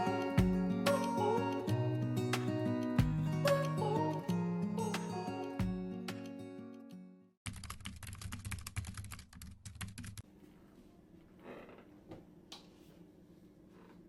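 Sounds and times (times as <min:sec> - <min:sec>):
acoustic guitar music: 0:00.0 - 0:07.3.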